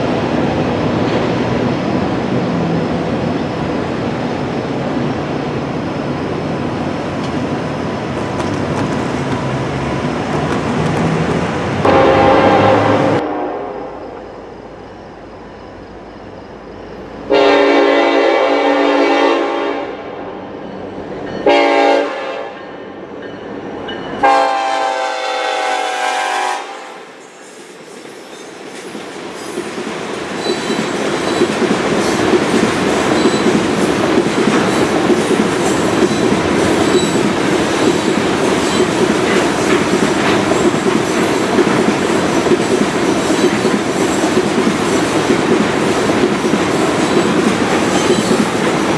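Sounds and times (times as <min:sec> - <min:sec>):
train rumbling past: 0:00.0 - 0:48.9
locomotive air horn: 0:11.8 - 0:14.2, 0:17.3 - 0:20.1, 0:21.4 - 0:22.6, 0:24.2 - 0:27.0
wheels clacking over rail joints: 0:28.7 - 0:48.9.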